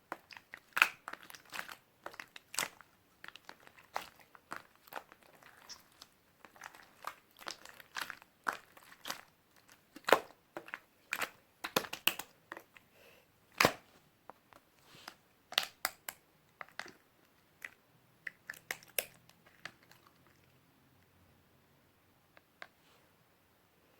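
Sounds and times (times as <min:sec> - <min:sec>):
slime squeezed clicking and popping: 0:00.1 - 0:12.3.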